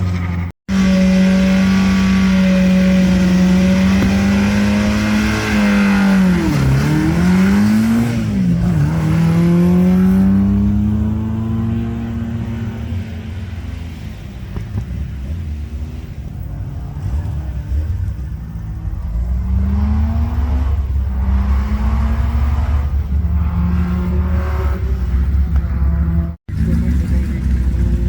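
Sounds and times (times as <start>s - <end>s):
rally car engine revving: 0.0s - 28.0s.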